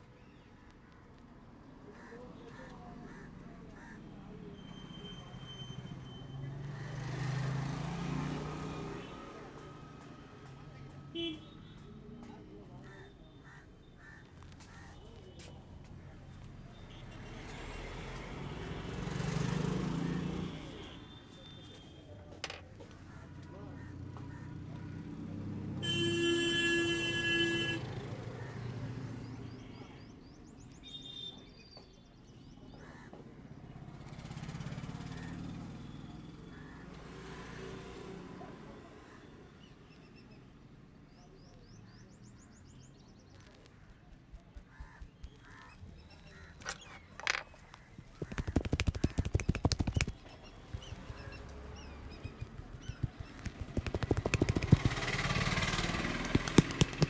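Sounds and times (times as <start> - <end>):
street background noise: 0.0 - 57.0
vehicle horn: 25.8 - 27.9
hands tapping and slapping head: 48.0 - 57.0.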